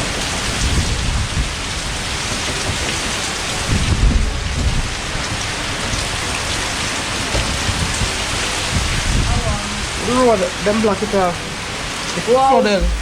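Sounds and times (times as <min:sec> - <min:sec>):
heavy rain falling: 0:00.0 - 0:13.0
low rumble: 0:12.7 - 0:13.0.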